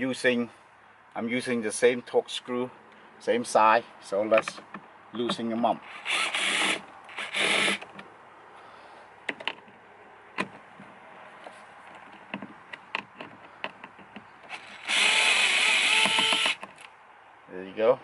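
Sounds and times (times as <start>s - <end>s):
power screwdriver whirring: 5.9s - 7.9s, 14.5s - 16.6s.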